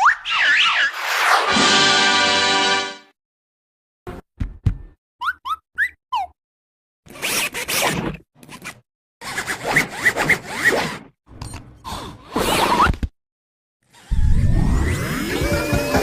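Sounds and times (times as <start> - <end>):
whistling pitch glides: 0.0 - 1.0
cartoon swishes and zips: 0.0 - 2.0.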